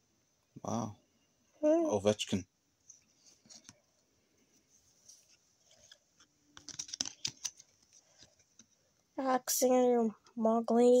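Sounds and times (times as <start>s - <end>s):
trading cards flipped by hand: 5.2s - 8.8s.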